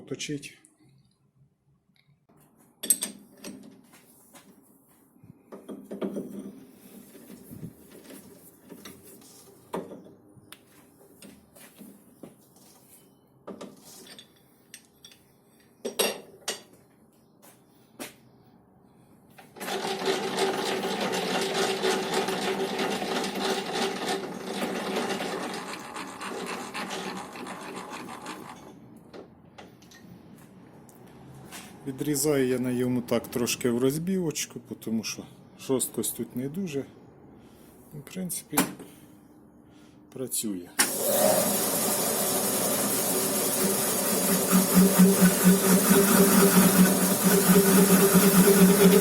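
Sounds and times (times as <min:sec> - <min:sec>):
metal lathe running: 0:40.9 - 0:49.0
parting tool cutting metal: 0:43.0 - 0:49.0.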